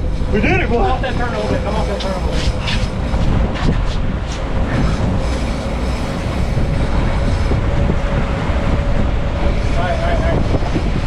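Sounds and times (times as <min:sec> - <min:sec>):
outboard engines rumbling: 0:00.0 - 0:11.0
water rushing: 0:00.0 - 0:11.0
wind: 0:00.0 - 0:11.0.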